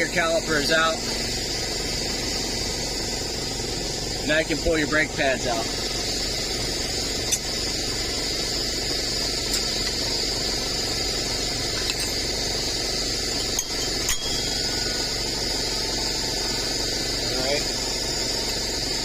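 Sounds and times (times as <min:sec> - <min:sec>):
light metallic clinks: 0:11.7 - 0:12.3, 0:13.3 - 0:15.1.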